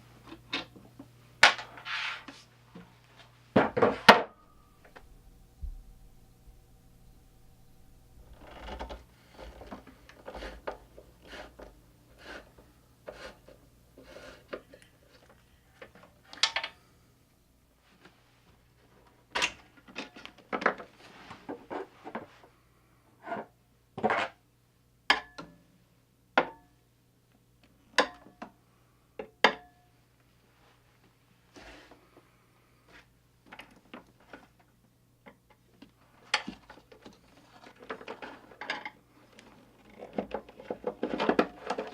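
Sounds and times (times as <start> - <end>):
faint steady hum: 0.0 - 41.9
tools knocking and scraping: 3.5 - 13.6.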